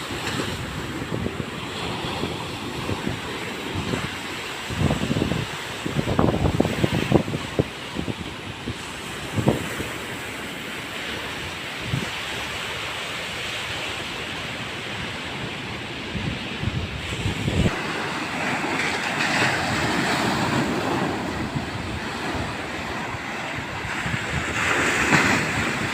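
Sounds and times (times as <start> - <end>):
wind buffeting microphone: 0.0 - 10.4, 11.3 - 12.5, 14.8 - 25.9
surf breaking: 17.0 - 25.9.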